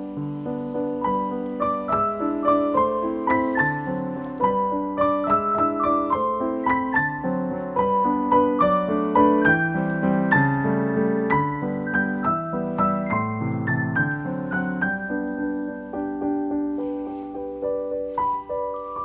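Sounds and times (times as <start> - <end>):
gentle piano music: 0.0 - 19.0.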